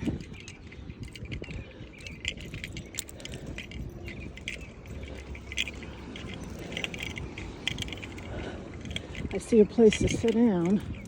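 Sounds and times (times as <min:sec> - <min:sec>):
metallic jingling and rattling: 0:00.0 - 0:11.0.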